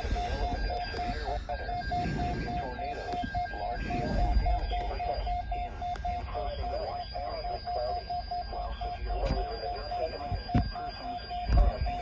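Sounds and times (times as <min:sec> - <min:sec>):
electronic alert beeps: 0:00.0 - 0:12.0.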